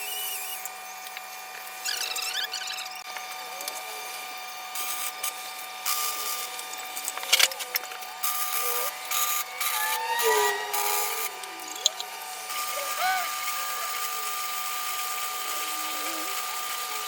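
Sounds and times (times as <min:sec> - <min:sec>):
rasping strokes against metal: 0:07.2 - 0:14.1
squeaks: 0:09.6 - 0:12.0.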